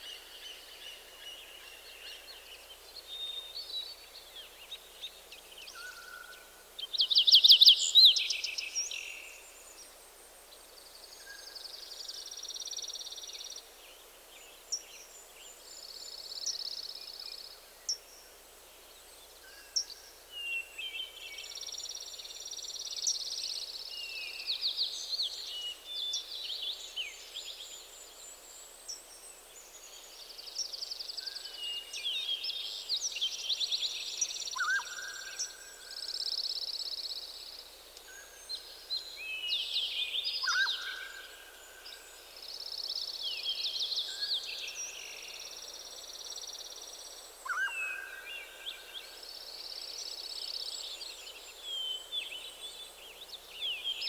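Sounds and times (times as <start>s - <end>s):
faint steady hiss: 0.0s - 54.0s
songbirds singing: 18.9s - 54.0s.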